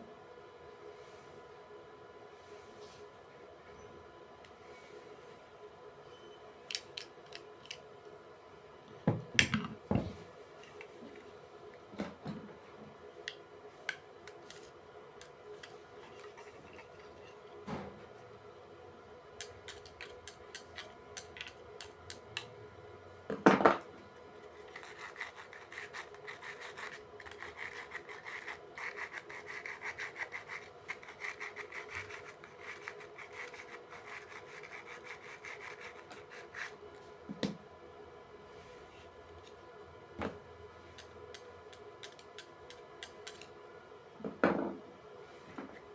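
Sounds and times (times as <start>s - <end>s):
sandpaper scrubbing metal: 24.6s - 36.8s.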